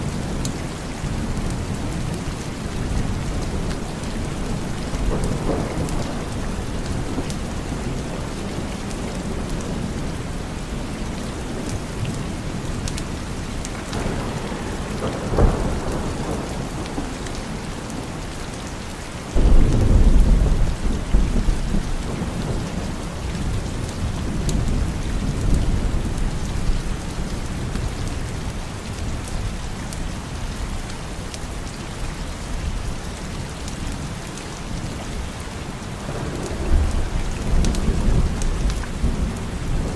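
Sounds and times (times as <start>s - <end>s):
steady rain: 0.0s - 39.9s
thunder clap rumbling: 1.0s - 10.8s, 13.7s - 18.3s, 19.3s - 27.3s, 35.9s - 39.9s
thunder crack: 13.8s - 18.0s, 19.4s - 22.9s.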